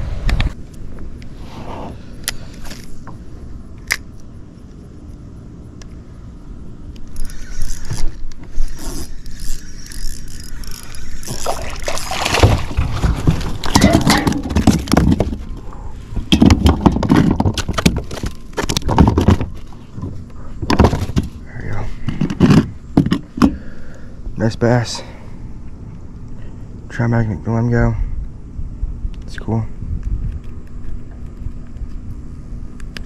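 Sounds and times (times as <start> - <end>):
knocking and rattling on kayak: 11.4 - 15.6, 16.2 - 21.4, 22.0 - 23.6
heavy irregular thumps: 12.3 - 15.5.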